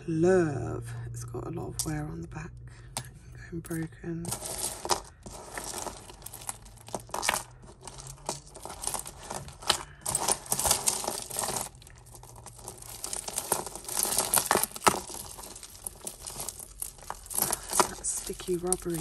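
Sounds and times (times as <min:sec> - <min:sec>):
small metal pieces clinking: 0:04.2 - 0:19.0.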